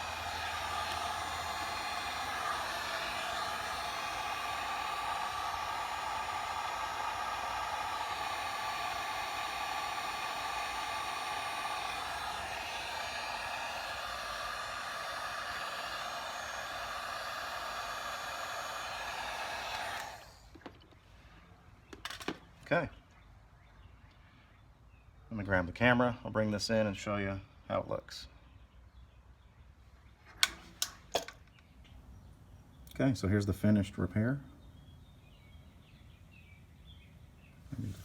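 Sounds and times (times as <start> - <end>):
heat gun fan blowing: 0.0 - 21.0.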